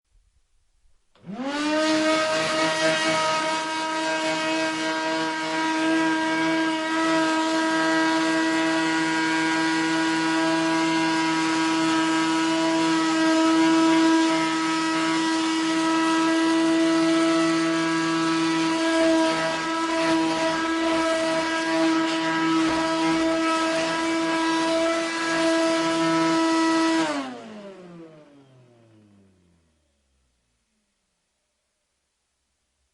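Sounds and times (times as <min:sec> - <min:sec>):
vacuum cleaner running: 0:01.2 - 0:29.6
vacuum motor spinning down: 0:01.2 - 0:29.7.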